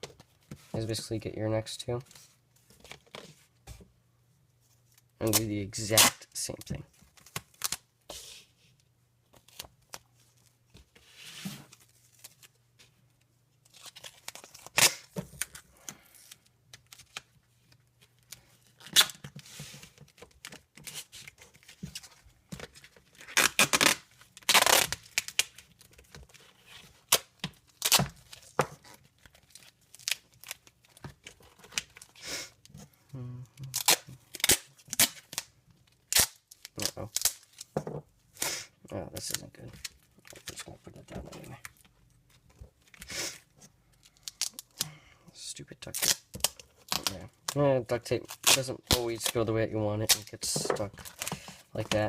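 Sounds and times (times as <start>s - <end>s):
duct tape pulled and ripped: 5.2s - 6.3s, 13.7s - 15.6s, 18.8s - 19.3s, 23.2s - 25.6s, 27.0s - 28.1s, 33.6s - 37.7s, 45.8s - 49.4s.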